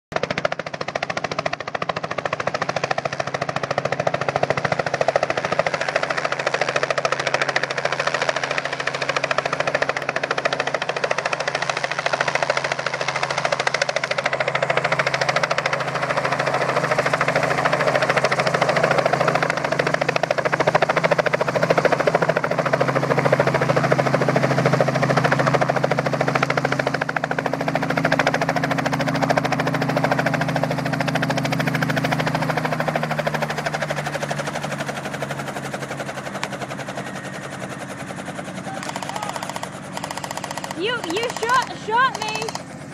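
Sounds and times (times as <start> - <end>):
toy minigun rapid firing rattle: 38.7 - 42.7.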